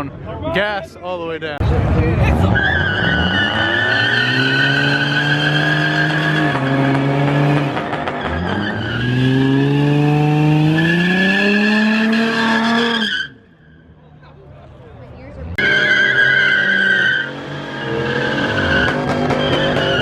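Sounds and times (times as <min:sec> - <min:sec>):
car engine at high revs: 0:01.7 - 0:13.0
tyres squealing: 0:15.6 - 0:20.0.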